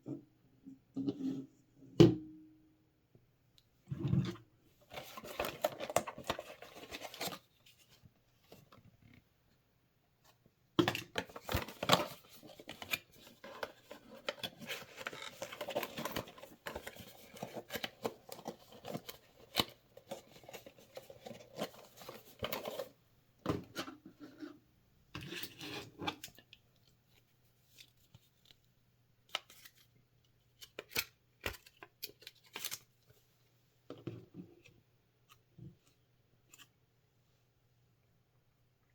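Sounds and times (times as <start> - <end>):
packaging rustling and clicking: 11.2 - 22.9.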